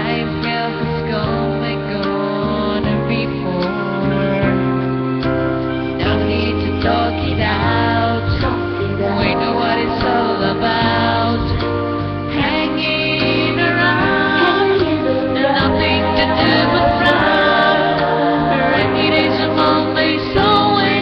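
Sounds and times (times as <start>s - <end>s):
woman singing: 0.0s - 4.5s, 6.0s - 21.0s
bass line: 0.0s - 21.0s
instrumental backing: 0.0s - 21.0s.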